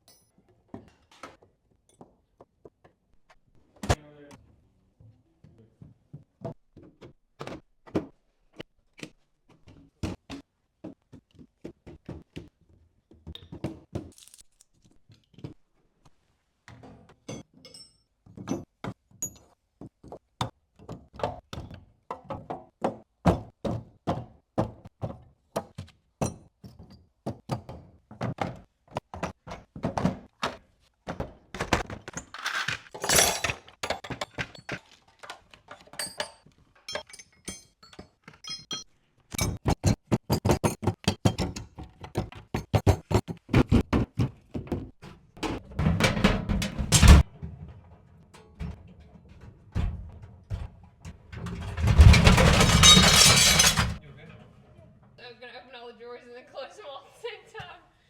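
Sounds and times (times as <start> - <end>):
tools clunking in toolbox: 51.3 - 54.0
scraping rattle: 51.4 - 54.0.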